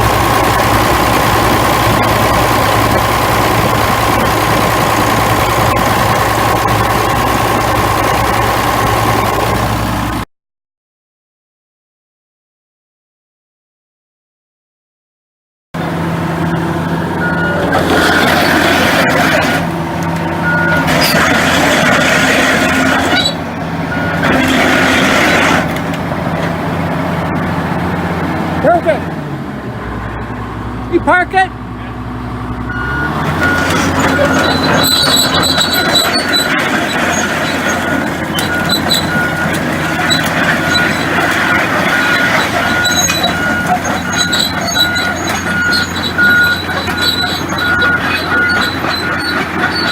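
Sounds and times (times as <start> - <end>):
excavator diesel engine: 0.0 - 10.3, 15.8 - 49.9
warning beeps: 17.2 - 18.8, 32.7 - 49.9.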